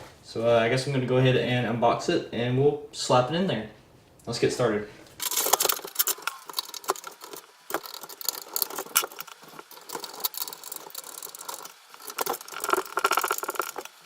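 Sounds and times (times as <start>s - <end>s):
packaging rustling and crinkling: 5.2s - 14.0s.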